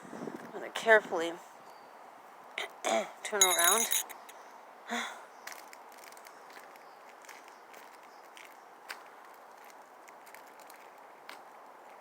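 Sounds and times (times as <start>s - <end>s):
footsteps on icy asphalt: 5.5s - 12.0s.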